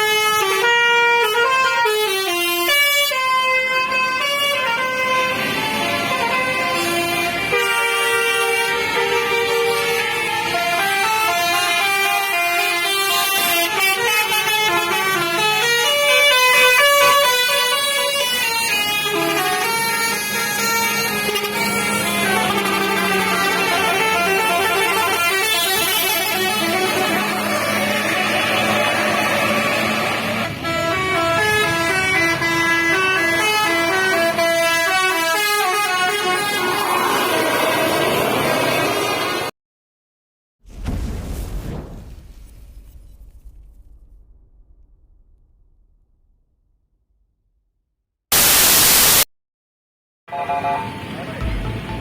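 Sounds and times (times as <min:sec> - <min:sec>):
musical air horns playing melodies: 0:00.0 - 0:39.1, 0:50.3 - 0:52.0
rushing noise: 0:48.3 - 0:49.3.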